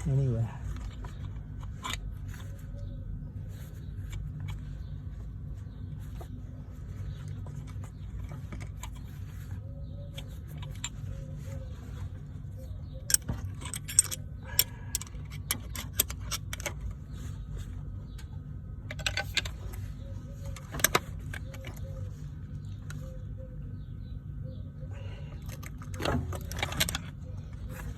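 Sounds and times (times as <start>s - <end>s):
metal tools clanking: 13.0s - 16.8s.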